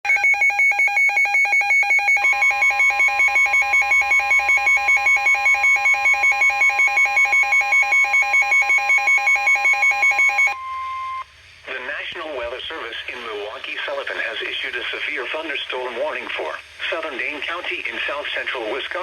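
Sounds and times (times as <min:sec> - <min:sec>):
rapid electronic beeping: 0:00.1 - 0:11.2.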